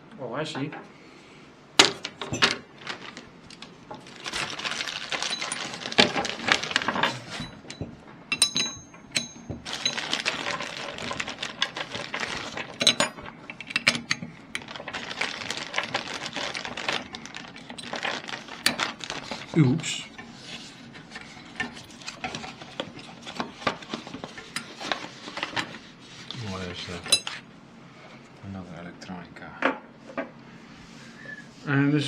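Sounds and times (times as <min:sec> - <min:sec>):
small metal parts clinking: 0:04.4 - 0:18.9.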